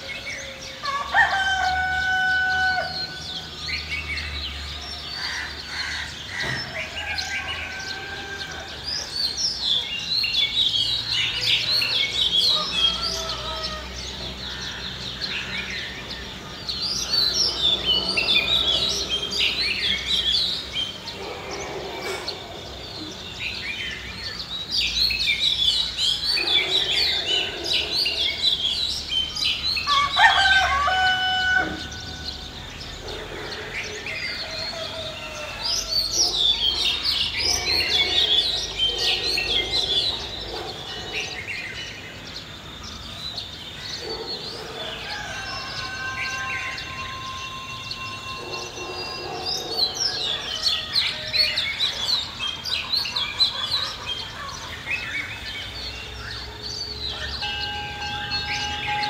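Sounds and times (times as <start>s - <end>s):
rooster crowing: 0.6s - 3.4s, 6.0s - 8.9s, 11.8s - 14.7s, 29.8s - 32.5s, 34.2s - 36.3s, 44.7s - 51.9s, 57.0s - 59.0s
small birds chirping: 2.8s - 31.0s, 31.6s - 59.0s.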